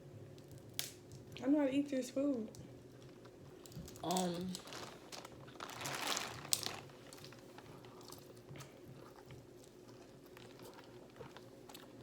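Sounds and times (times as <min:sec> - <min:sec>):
chewing: 0:06.4 - 0:12.0.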